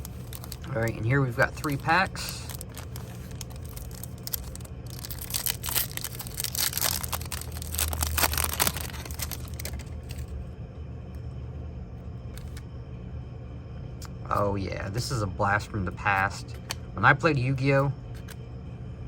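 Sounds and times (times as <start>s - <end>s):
foil wrappers crinkling and tearing: 0.0s - 10.3s.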